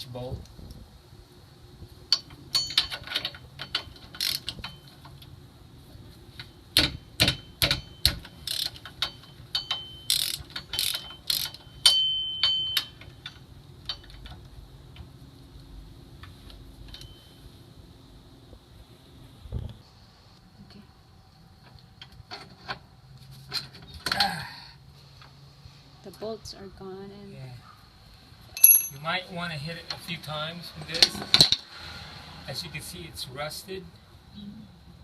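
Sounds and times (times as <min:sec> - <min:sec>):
ratchet wrench clicking: 0:02.1 - 0:04.6, 0:06.8 - 0:13.3
light metallic ring: 0:11.1 - 0:13.0, 0:16.9 - 0:17.5, 0:28.5 - 0:29.2.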